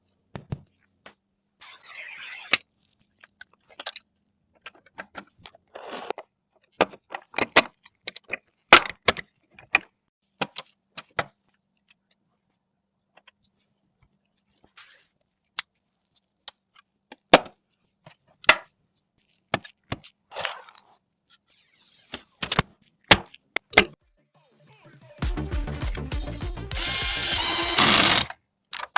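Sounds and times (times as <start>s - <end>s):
computer parts clicking: 26.8s - 28.3s.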